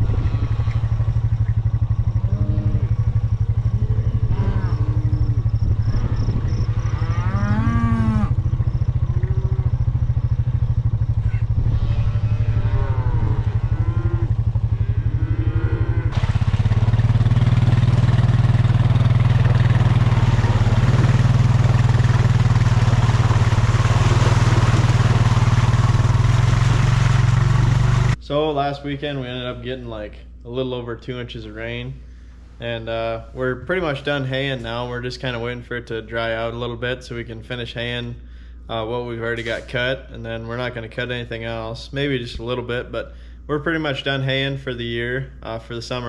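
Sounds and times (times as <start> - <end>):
vehicle engine running: 0.0 - 28.3
cattle mooing: 2.0 - 10.0, 11.2 - 16.3.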